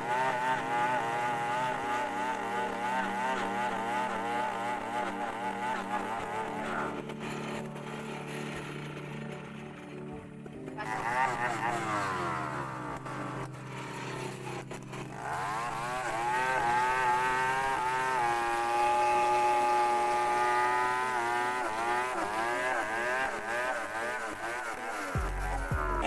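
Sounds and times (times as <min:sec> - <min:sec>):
chainsaw engine at high revs: 0:00.0 - 0:26.0.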